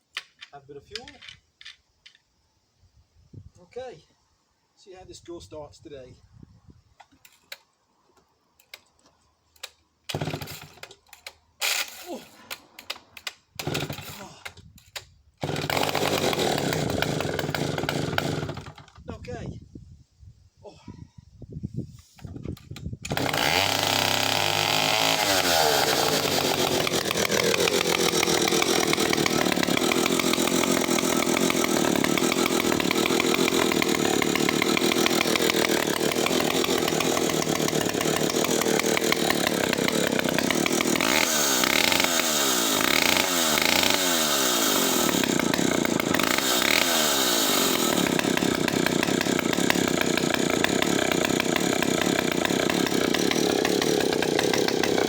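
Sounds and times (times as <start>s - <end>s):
chainsaw engine revving: 10.1s - 14.3s, 15.4s - 18.9s, 23.1s - 55.0s.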